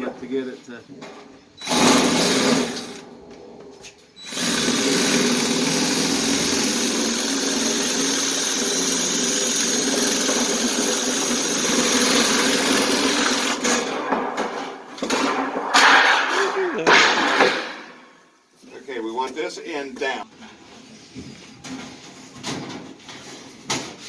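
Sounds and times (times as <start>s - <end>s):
power tool cutting: 1.6s - 3.0s, 4.2s - 13.8s.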